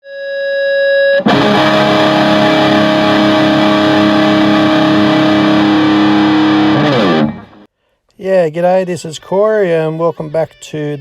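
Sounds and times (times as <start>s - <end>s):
distorted electric guitar chords: 1.2s - 7.7s.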